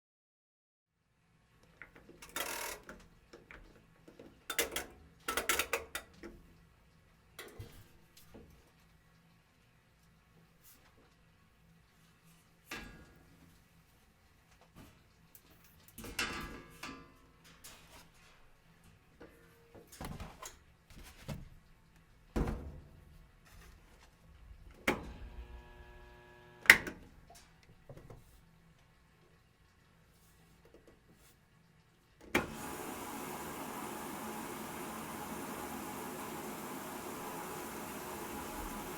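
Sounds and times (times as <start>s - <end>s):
clothes clattering and rattling: 19.8s - 21.7s
washing machine motor hum: 24.8s - 27.0s, 32.3s - 38.9s
low steady hum: 24.9s - 27.5s.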